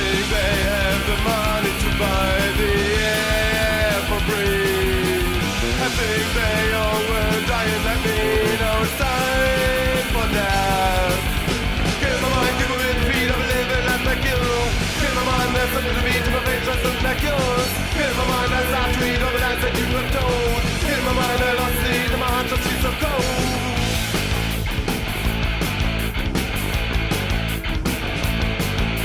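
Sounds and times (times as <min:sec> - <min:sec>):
punk rock band playing: 0:00.0 - 0:29.0.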